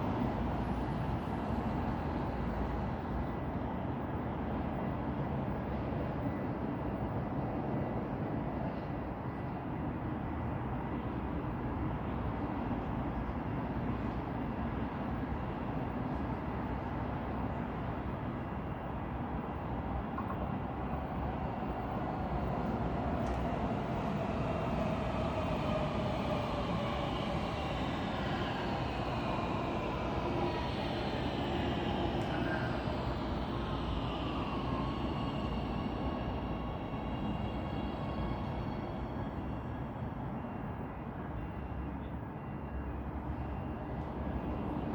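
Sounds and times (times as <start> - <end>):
traffic rumble: 20.4 - 40.9
vehicle whining tones: 21.2 - 40.8.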